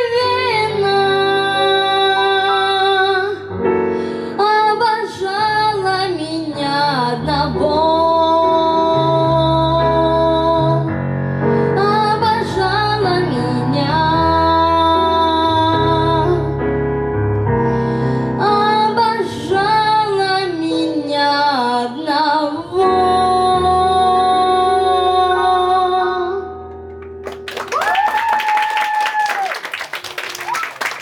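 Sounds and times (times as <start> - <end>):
woman singing: 0.0 - 3.5, 4.4 - 10.9, 11.7 - 16.5, 18.4 - 26.5
bass: 0.0 - 28.1.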